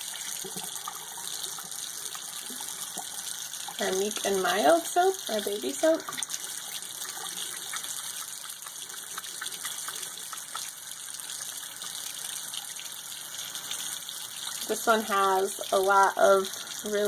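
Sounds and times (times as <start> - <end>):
tap water running into sink: 0.0 - 17.0.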